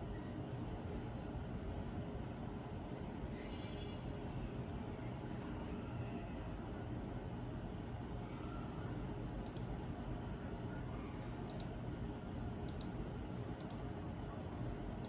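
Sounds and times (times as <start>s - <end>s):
low background hum: 0.0s - 15.0s
faint short clicks: 9.4s - 9.7s, 11.5s - 11.8s, 12.7s - 13.0s, 13.6s - 13.8s.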